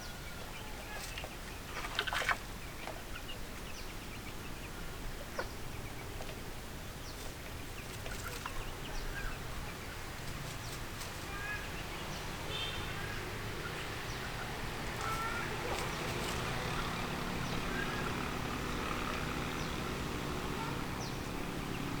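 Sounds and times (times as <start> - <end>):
chicks peeping: 13.1 - 21.9.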